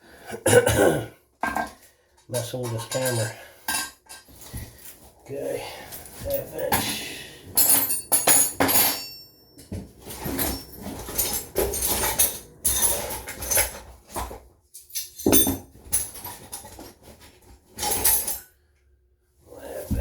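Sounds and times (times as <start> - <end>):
metal hand tools clinking: 5.8 - 17.2, 17.8 - 18.5.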